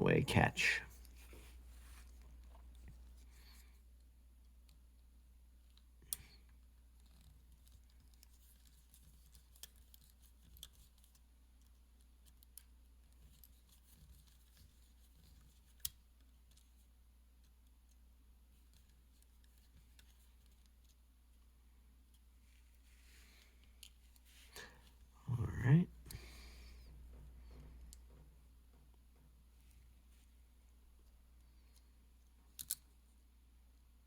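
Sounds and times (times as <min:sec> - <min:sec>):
clicks of small metal watch parts: 0:32.5 - 0:33.0.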